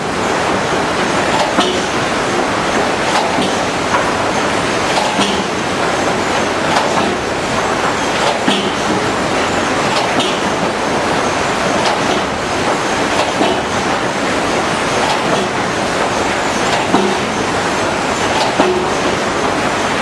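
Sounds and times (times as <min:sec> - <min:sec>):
irregular clanks and knocks: 0:01.0 - 0:02.0, 0:03.0 - 0:04.2, 0:04.8 - 0:10.8, 0:11.7 - 0:14.1, 0:14.9 - 0:17.5, 0:18.2 - 0:19.2.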